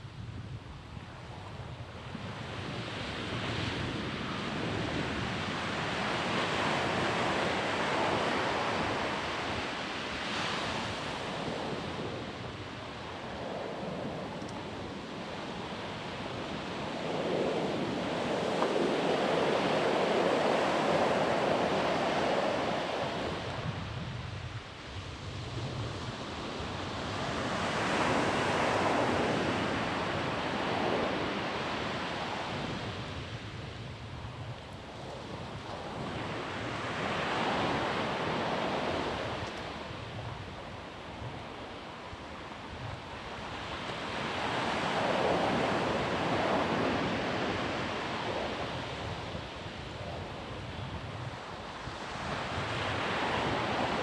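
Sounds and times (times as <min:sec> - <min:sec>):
waves breaking and washing in: 0:00.0 - 0:54.0.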